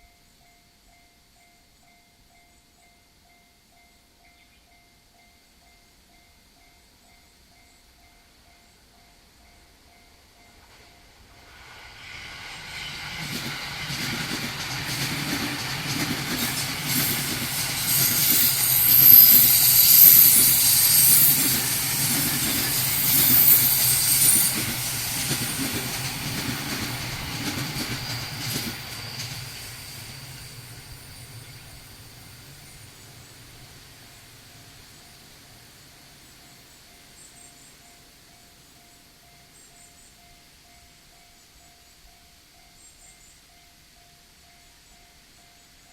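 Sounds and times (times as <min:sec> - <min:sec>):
train wheels on rails: 0:08.9 - 0:45.8
high hiss: 0:09.2 - 0:41.1
wheels clattering over rail joints: 0:12.9 - 0:31.2
crossing warning bell ringing: 0:14.5 - 0:33.0.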